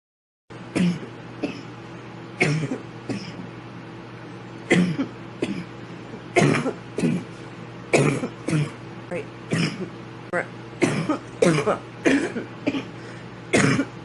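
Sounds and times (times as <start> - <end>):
steady low hum: 0.5 - 14.0
girl coughing: 0.8 - 1.7, 2.4 - 3.4, 4.7 - 5.7, 6.4 - 7.3, 7.9 - 8.8, 9.5 - 9.9, 10.8 - 14.0.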